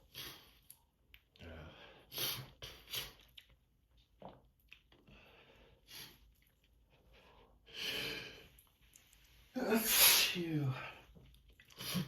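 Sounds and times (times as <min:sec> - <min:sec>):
person breathing: 0:05.1 - 0:06.2, 0:06.9 - 0:08.6.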